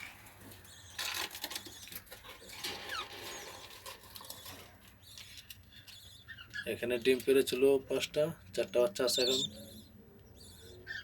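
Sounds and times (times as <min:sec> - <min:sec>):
clicks and rustles: 0:00.0 - 0:07.4
budgerigars chirping: 0:04.3 - 0:11.0.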